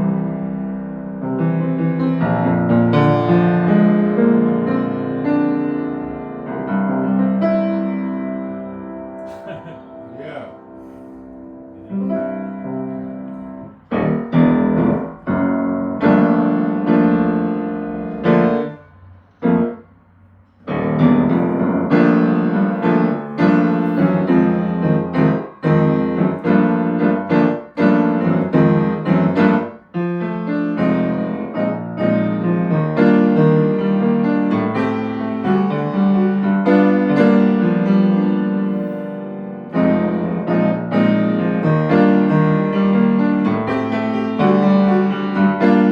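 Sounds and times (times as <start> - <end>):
piano chords and notes: 0.0 - 45.9.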